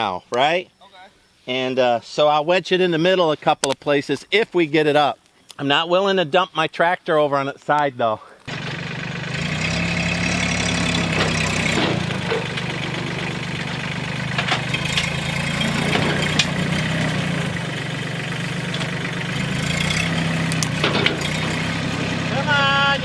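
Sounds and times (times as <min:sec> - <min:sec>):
tractor engine idling: 0:08.4 - 0:23.0
metallic clanks: 0:10.6 - 0:17.6, 0:18.5 - 0:21.8.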